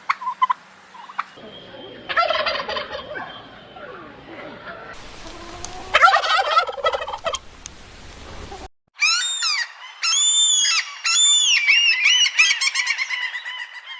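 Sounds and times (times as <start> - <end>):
turkey gobbling: 0.1 - 9.7.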